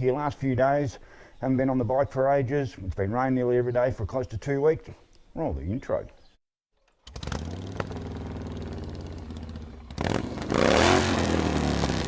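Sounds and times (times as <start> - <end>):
motorcycle engine revving: 6.9 - 12.0.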